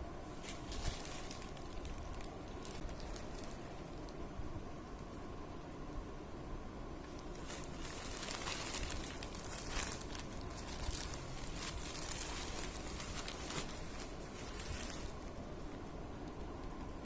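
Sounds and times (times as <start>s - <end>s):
packaging rustling and crackling: 0.3s - 4.2s, 7.0s - 17.0s.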